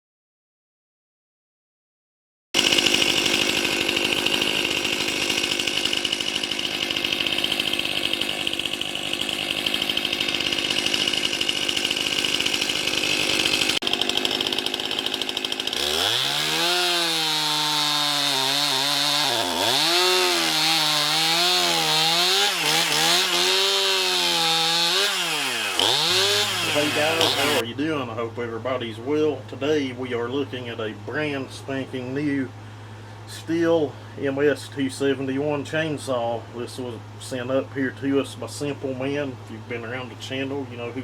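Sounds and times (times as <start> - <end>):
chainsaw running and revving: 2.6 - 27.7.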